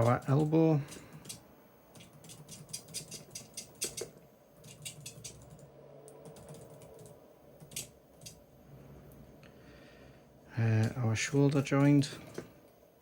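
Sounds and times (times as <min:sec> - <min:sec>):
keyboard typing clicks: 0:00.0 - 0:08.4.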